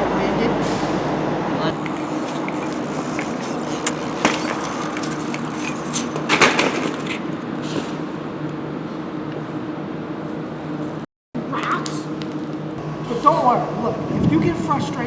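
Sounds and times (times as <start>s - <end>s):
clatter of impacts: 1.7s - 8.1s.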